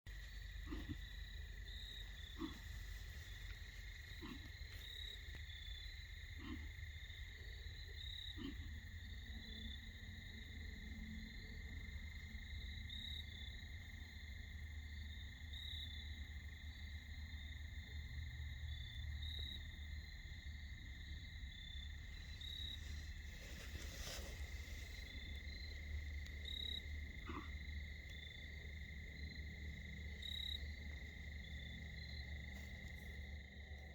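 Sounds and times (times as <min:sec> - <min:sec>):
crickets trilling: 0:00.1 - 0:33.9
deer coughing: 0:00.6 - 0:01.2, 0:02.3 - 0:03.2, 0:04.1 - 0:04.6, 0:06.3 - 0:06.8, 0:08.3 - 0:08.8, 0:27.0 - 0:28.1.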